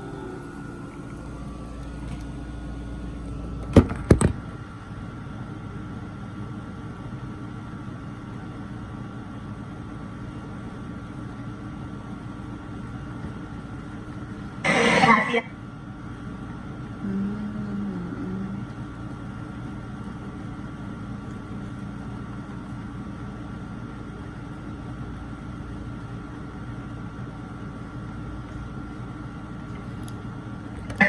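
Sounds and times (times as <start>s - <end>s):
brief wavering tone: 0.0s - 3.7s
boat motor humming: 0.0s - 5.1s, 17.0s - 19.2s.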